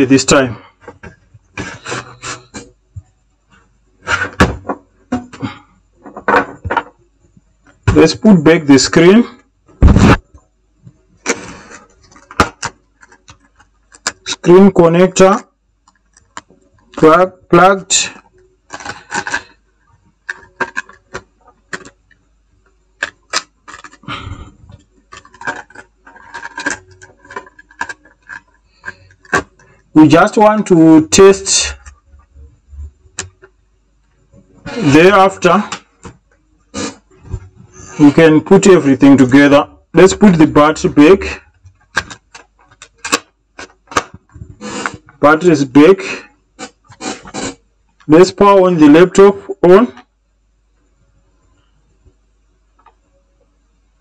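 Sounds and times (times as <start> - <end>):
laptop parts clicking and clattering: 11.2 - 14.3, 15.8 - 17.1, 18.2 - 29.9, 41.5 - 44.5.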